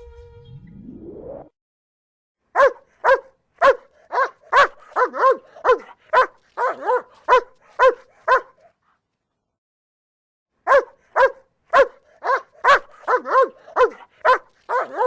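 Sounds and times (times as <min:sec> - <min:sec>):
dog barking: 0:02.5 - 0:08.8, 0:10.6 - 0:15.0.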